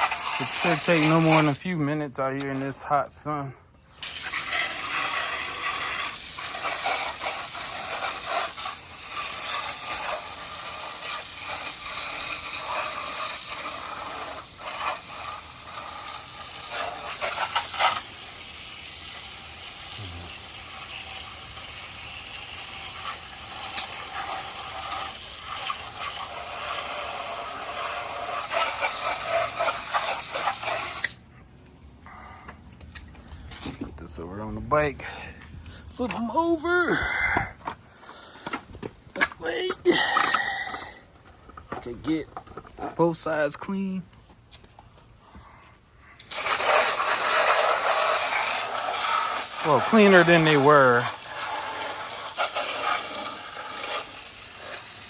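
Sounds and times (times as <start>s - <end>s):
water hissing and splashing: 0.0s - 1.6s, 4.0s - 31.2s, 46.2s - 55.0s.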